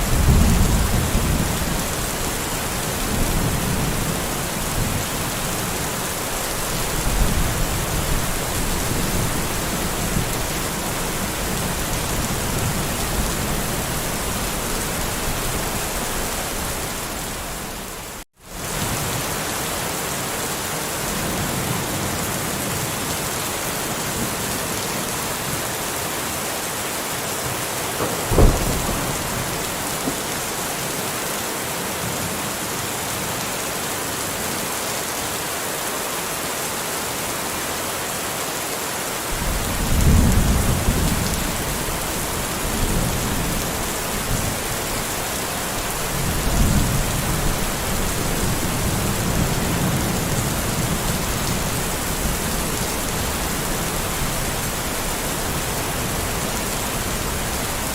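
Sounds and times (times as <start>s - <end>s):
rolling thunder: 0.0s - 5.4s, 28.0s - 30.6s, 39.4s - 45.0s
rain hissing: 27.4s - 31.8s, 39.2s - 57.9s
thunder crack: 28.0s - 30.4s.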